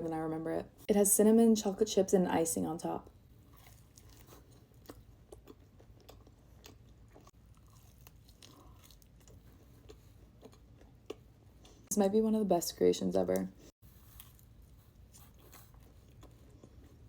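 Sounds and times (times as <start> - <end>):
mouth chewing food: 3.4 - 11.9, 13.9 - 17.0.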